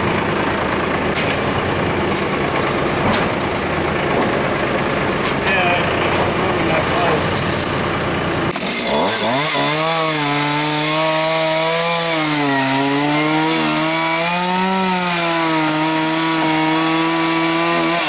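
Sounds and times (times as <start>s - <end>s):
chainsaw cutting wood: 6.2s - 18.0s.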